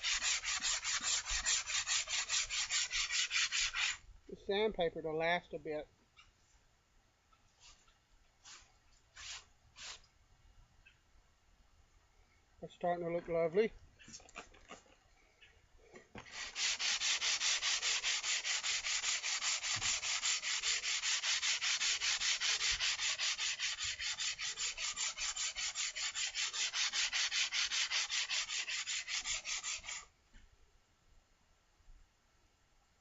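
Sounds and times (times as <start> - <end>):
metal scraping on sandpaper: 0.0 - 4.0, 7.6 - 10.0, 16.2 - 30.1.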